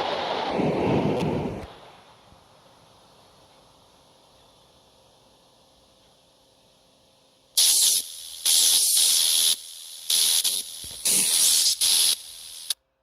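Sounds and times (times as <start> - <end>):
loud hissing bursts: 7.6 - 12.8.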